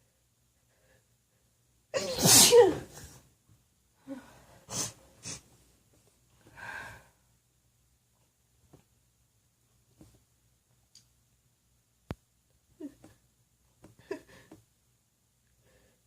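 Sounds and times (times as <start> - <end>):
woman sneezing: 2.0 - 3.1
short breaths: 6.4 - 7.2.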